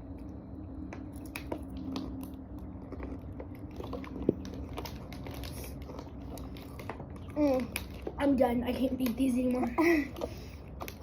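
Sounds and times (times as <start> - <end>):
person biting and chewing food: 0.1 - 8.2.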